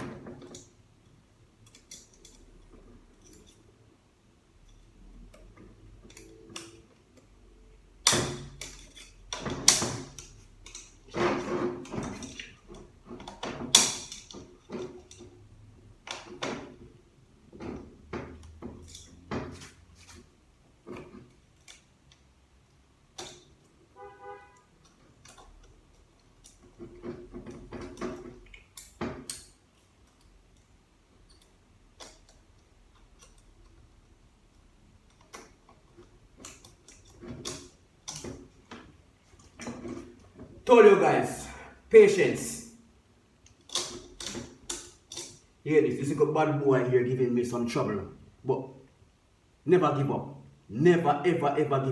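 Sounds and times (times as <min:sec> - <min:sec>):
metal hand tools clicking and scraping: 0:08.0 - 0:15.4, 0:18.4 - 0:20.3, 0:43.4 - 0:45.5.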